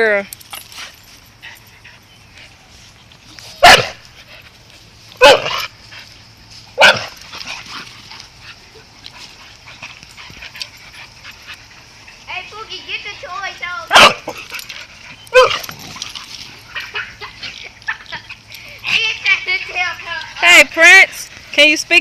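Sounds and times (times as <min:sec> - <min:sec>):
dogs play-fighting: 0:00.0 - 0:22.0
dog barking: 0:03.6 - 0:04.0, 0:05.2 - 0:05.6, 0:06.8 - 0:07.1, 0:13.9 - 0:14.4, 0:15.3 - 0:15.6.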